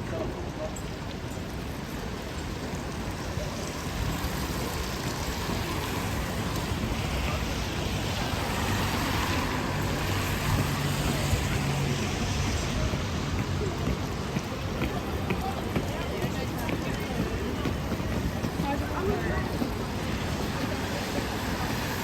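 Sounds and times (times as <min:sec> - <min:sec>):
tyres on wet road: 0:00.0 - 0:22.0
rain hiss: 0:01.0 - 0:14.3.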